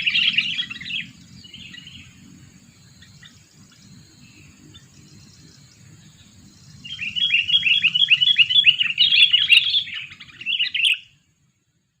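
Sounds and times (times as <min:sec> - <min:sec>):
bird chattering call: 0:00.0 - 0:11.1.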